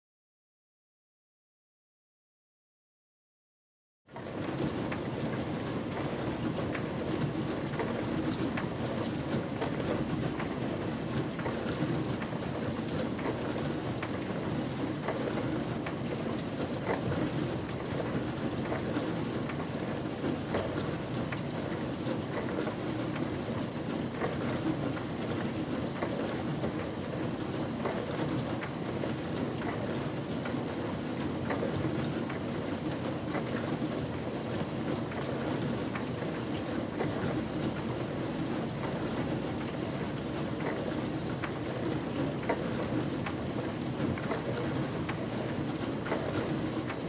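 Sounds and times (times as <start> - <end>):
dishwasher churning water: 4.2 - 47.0
small irregular clicks and taps: 24.9 - 26.1.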